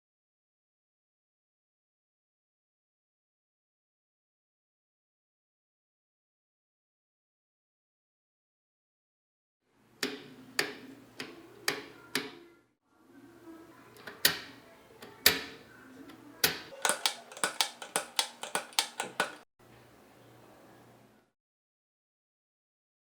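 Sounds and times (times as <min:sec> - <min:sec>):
typewriter keys clacking: 0:16.4 - 0:19.4.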